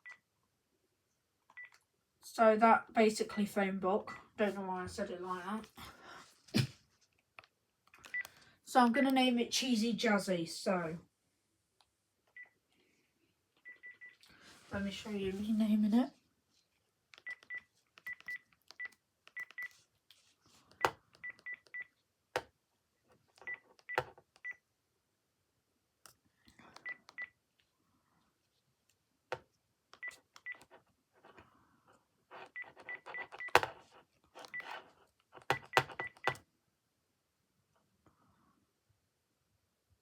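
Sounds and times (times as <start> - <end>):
handset keypad clicks: 17.2 - 19.7, 32.6 - 33.7, 35.4 - 36.4.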